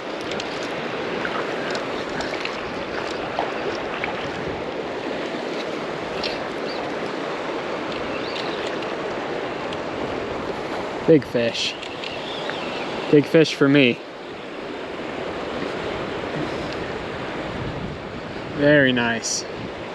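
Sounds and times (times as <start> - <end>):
faint ticks and splashes: 0.0 - 9.9, 11.7 - 12.7
river current rushing: 0.0 - 19.9.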